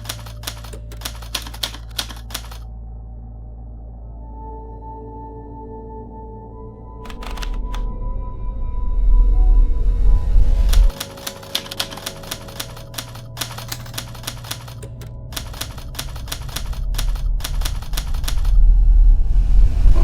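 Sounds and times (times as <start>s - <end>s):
typewriter keys clacking: 0.0s - 2.6s, 7.1s - 7.8s, 10.7s - 18.6s
low musical drone: 0.0s - 20.0s.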